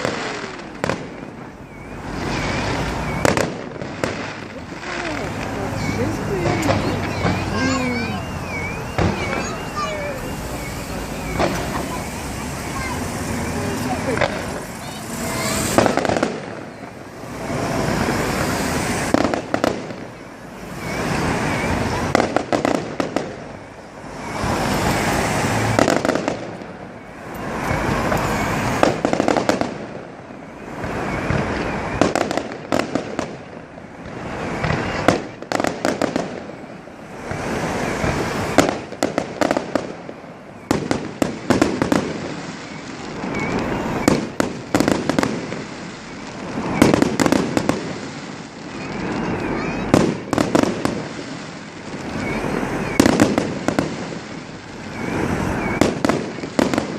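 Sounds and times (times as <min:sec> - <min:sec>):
fireworks crackling pops: 0:00.0 - 0:56.9
fireworks rushing: 0:00.0 - 0:56.9.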